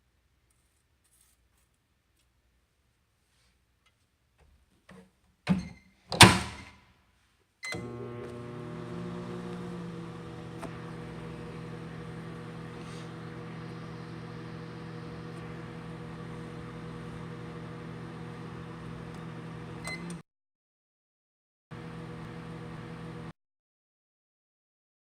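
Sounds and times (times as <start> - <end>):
microwave oven humming: 7.7 - 20.2, 21.7 - 23.3.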